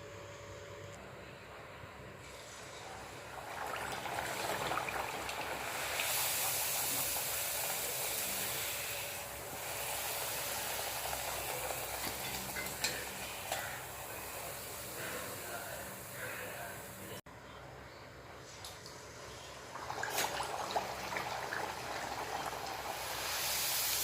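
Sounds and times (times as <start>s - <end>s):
dough sizzling in hot oil: 2.3s - 16.9s, 19.8s - 24.0s.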